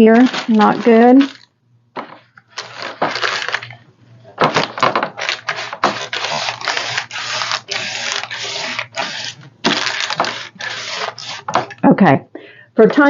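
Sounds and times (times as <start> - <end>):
scratchy rubbing strokes: 5.4 - 11.7.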